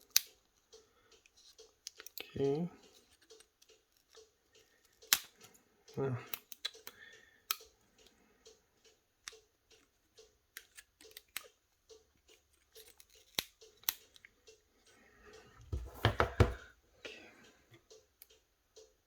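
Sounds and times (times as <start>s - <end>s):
small tool clicks and taps: 2.9s - 5.5s
dull knocks: 15.7s - 16.7s.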